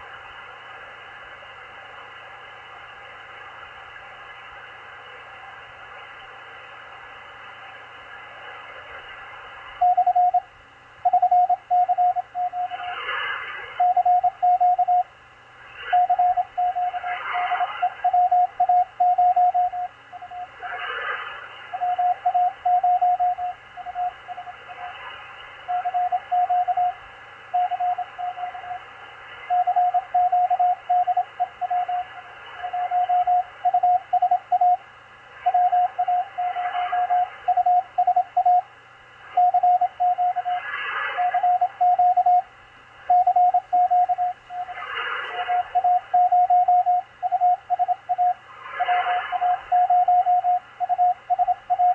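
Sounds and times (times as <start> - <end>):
radio band hiss: 0.0 - 51.9
static bursts: 7.6 - 15.0, 15.6 - 51.9
morse code tone: 9.8 - 12.9, 13.7 - 15.1, 15.9 - 20.6, 21.7 - 25.0, 25.6 - 28.8, 29.5 - 34.8, 35.4 - 38.7, 39.4 - 40.6, 41.2 - 51.9.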